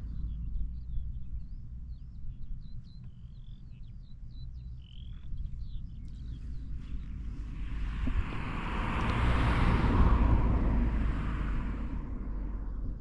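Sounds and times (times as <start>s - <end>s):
car passing by: 6.8s - 13.0s.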